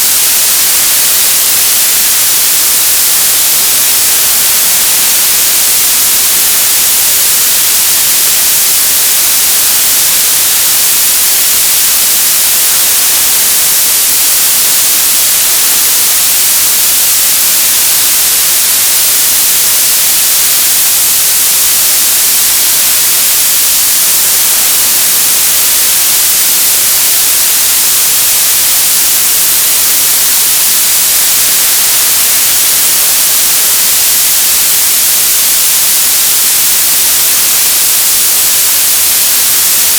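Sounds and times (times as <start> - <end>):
television static hiss: 0.0 - 39.9.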